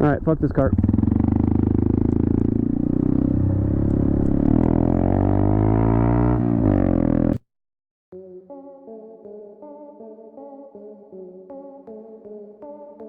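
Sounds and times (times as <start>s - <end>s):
motorcycle engine revving: 0.0s - 7.4s.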